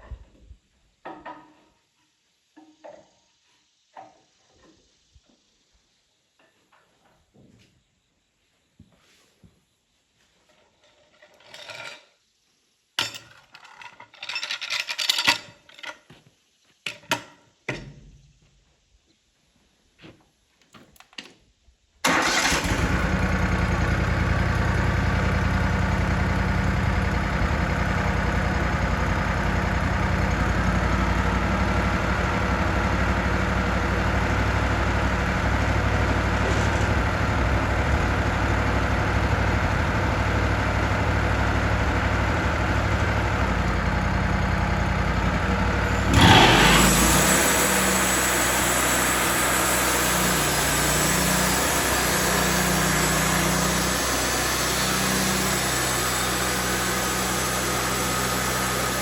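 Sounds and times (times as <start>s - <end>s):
band sawmill running: 22.1s - 59.0s.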